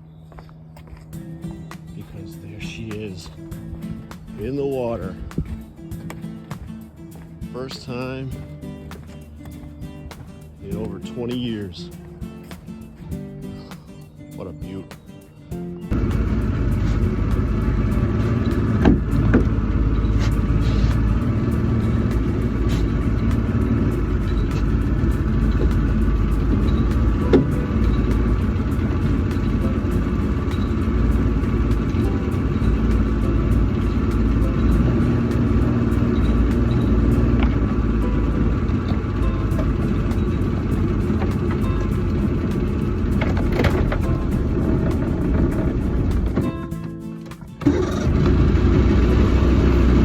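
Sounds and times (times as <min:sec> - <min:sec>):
outboard motor running: 0:15.9 - 0:50.0.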